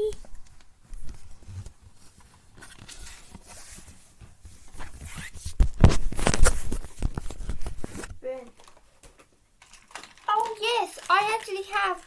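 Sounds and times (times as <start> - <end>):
fidget toys rustling and scratching: 0.0 - 12.0
fidget toys clicking and knocking: 8.4 - 12.0.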